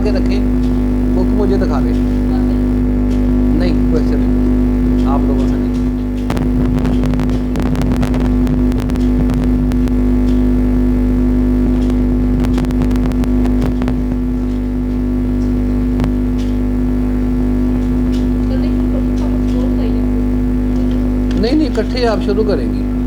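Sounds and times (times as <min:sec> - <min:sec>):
keyboard typing: 0:00.0 - 0:10.6
loud mechanical hum: 0:00.0 - 0:23.0.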